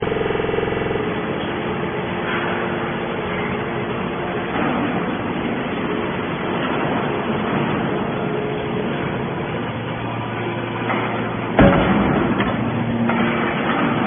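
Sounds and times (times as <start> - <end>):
baler machine running: 0.0 - 14.0.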